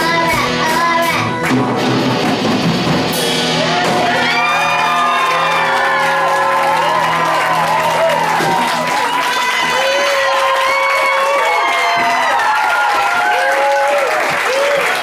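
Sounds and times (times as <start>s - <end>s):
rock band playing: 0.0s - 13.6s
audience shouting and whooping: 3.6s - 15.0s.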